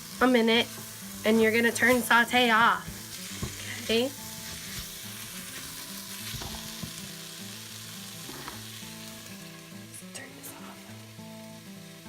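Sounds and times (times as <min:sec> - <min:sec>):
vegetables sizzling in a pot: 0:00.0 - 0:12.0.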